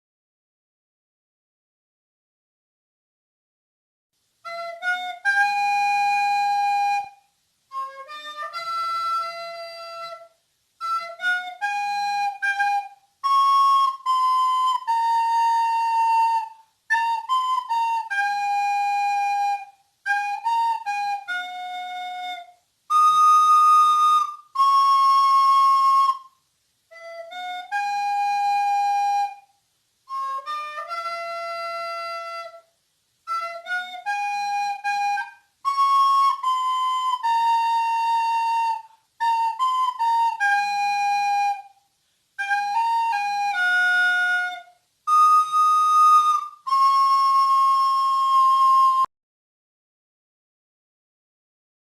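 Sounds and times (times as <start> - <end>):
soprano recorder melody: 4.4 - 41.8, 42.4 - 49.1.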